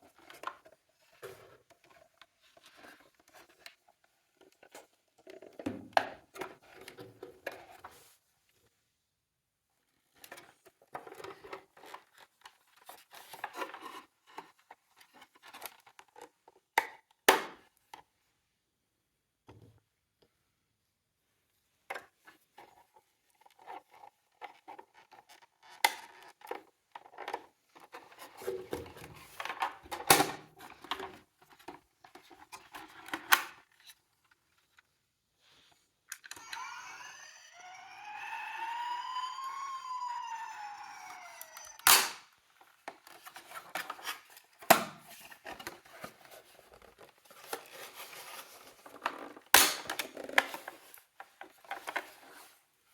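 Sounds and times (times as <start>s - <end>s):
toy electronic siren wailing: 36.3s - 42.2s.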